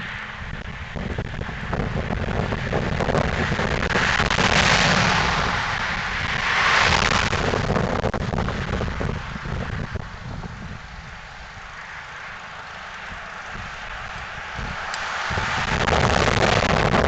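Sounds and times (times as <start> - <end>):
exhaust ticking: 0.0 - 17.0
car engine driving past: 3.7 - 8.0.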